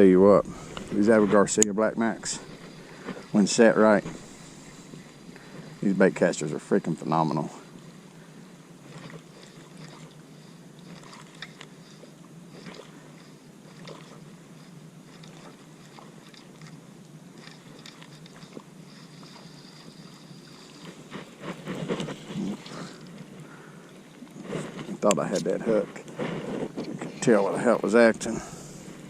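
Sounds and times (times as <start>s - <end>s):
crunchy reel handling noise: 0.0s - 29.0s
fishing reel clicking: 10.8s - 16.8s, 17.4s - 20.8s.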